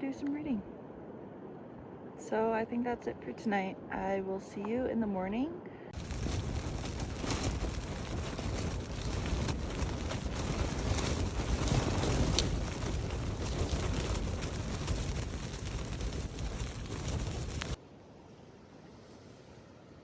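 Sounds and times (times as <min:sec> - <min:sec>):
wind buffeting microphone: 0:05.9 - 0:17.8.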